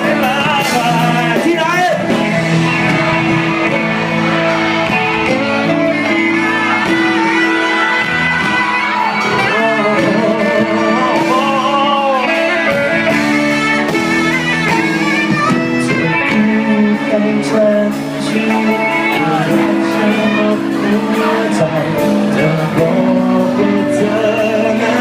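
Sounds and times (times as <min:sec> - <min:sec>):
electric guitar with bending notes: 0:00.0 - 0:25.0
live band playing pop-rock ballad: 0:00.0 - 0:25.0.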